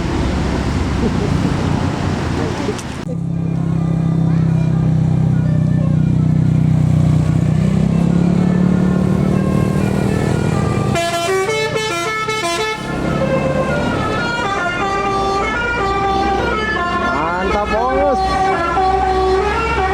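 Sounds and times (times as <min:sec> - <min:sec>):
bus engine running: 0:00.0 - 0:19.9
multi-tone bus horn tune: 0:08.3 - 0:19.9.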